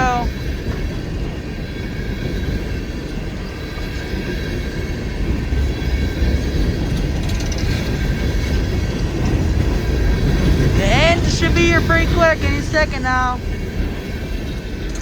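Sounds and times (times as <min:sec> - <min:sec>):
train wheels rumbling over track: 0:00.6 - 0:10.8.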